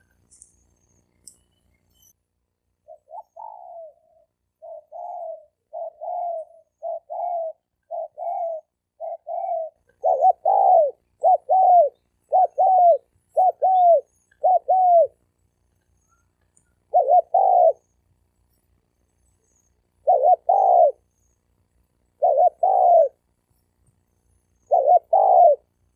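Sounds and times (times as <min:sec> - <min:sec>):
dove cooing: 0:02.8 - 0:15.2, 0:16.8 - 0:17.9, 0:19.9 - 0:21.1, 0:22.1 - 0:23.2, 0:24.6 - 0:25.7.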